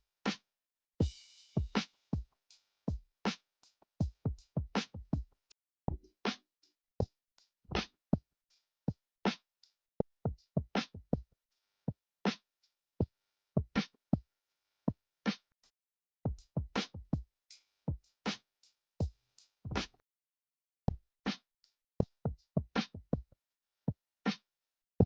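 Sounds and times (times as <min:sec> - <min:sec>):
drum machine kick and snare: 0:01.0 - 0:02.3, 0:04.0 - 0:05.3, 0:05.9 - 0:06.3, 0:16.3 - 0:17.2, 0:19.0 - 0:20.0, 0:22.0 - 0:23.2.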